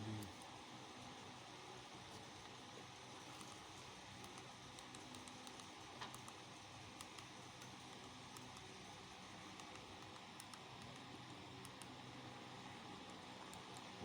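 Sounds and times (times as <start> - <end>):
small clicks: 4.2 - 12.1, 13.0 - 14.0.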